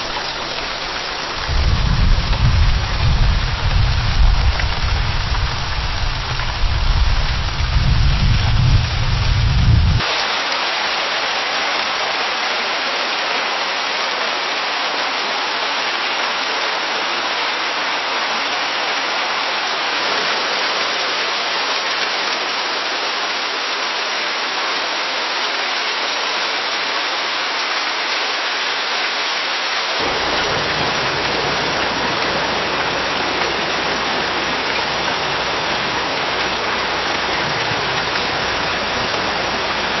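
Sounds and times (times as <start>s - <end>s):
rain falling in forest: 0.0s - 40.0s
low rumble: 1.4s - 10.0s.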